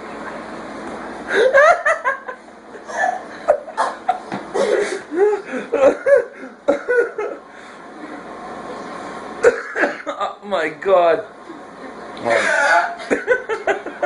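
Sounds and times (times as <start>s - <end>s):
people laughing: 1.3s - 7.4s, 12.5s - 14.0s.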